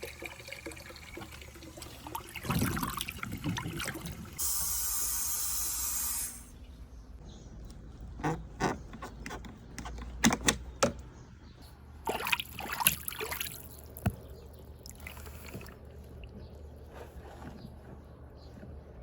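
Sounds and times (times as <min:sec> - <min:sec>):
water splashing: 0:00.0 - 0:04.4, 0:12.1 - 0:14.1.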